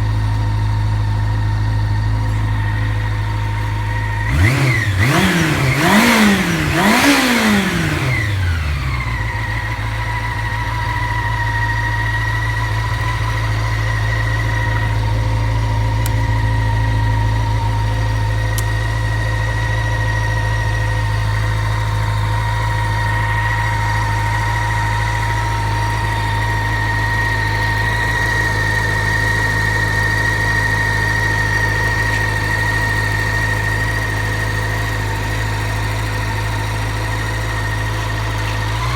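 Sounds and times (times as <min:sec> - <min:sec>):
motorcycle engine revving and idling: 0:00.0 - 0:38.9.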